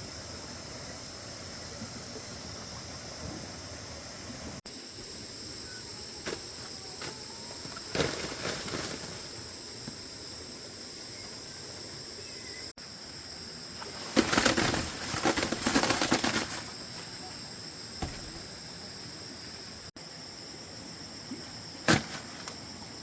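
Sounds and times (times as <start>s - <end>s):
outdoor background hum: 0.0s - 23.0s
rustles and knocks: 18.0s - 18.6s, 21.9s - 22.6s.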